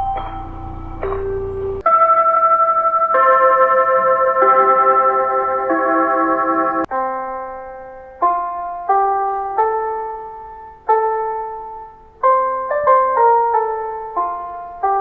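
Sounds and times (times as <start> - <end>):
electronic chime melody over loudspeaker: 0.0 - 6.8.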